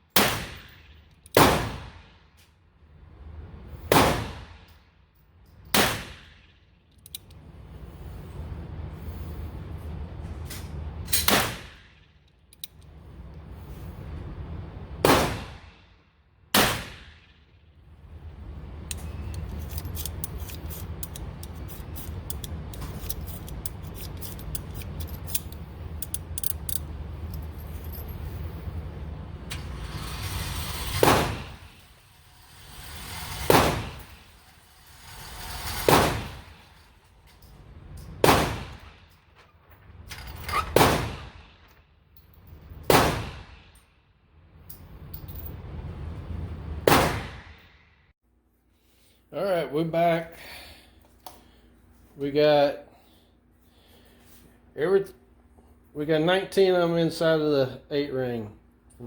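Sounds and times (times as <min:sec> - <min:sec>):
gunshots at indoor range: 0:00.1 - 0:02.2, 0:03.9 - 0:04.8, 0:05.7 - 0:06.4, 0:11.1 - 0:12.0, 0:15.0 - 0:15.8, 0:16.5 - 0:17.5, 0:38.2 - 0:39.0, 0:40.7 - 0:41.7, 0:42.9 - 0:43.8, 0:46.8 - 0:47.8
low hum: 0:07.0 - 0:15.7, 0:17.2 - 0:42.9, 0:44.4 - 0:48.1.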